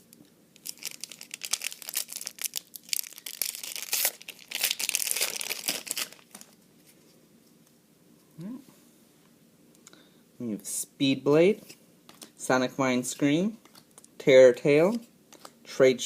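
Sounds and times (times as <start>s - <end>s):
foil wrapper crinkling and tearing: 0.6s - 6.6s.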